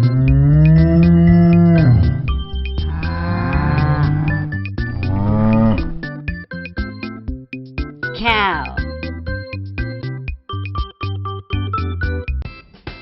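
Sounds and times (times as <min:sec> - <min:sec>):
cow mooing: 0:00.0 - 0:06.1
light background music: 0:00.0 - 0:13.0.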